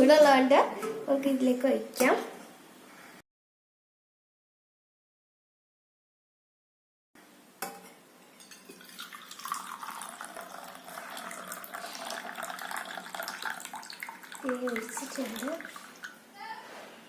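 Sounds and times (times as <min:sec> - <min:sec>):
glass clink: 0:07.6 - 0:13.6
liquid pouring into glass: 0:08.4 - 0:16.2.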